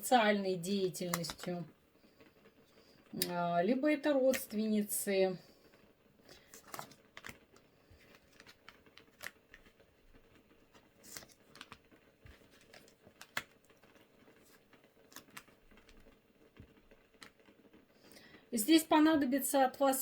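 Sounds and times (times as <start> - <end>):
cards snapping and rustling: 1.0 - 1.7, 6.2 - 17.6.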